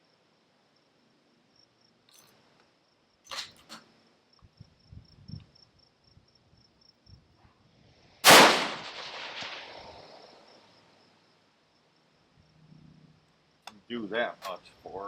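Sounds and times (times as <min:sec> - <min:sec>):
insects chirping: 0:00.0 - 0:15.0
rifle shot echoing: 0:08.2 - 0:10.2.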